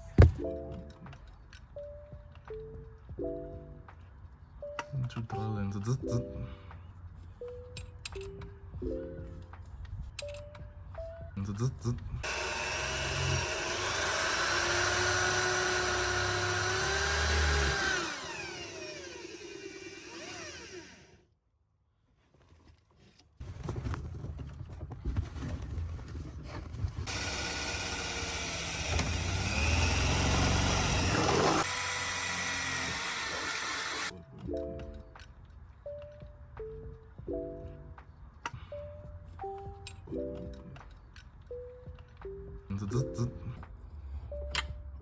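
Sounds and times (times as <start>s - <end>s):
power drill boring through metal: 12.2s - 21.2s, 27.1s - 34.1s.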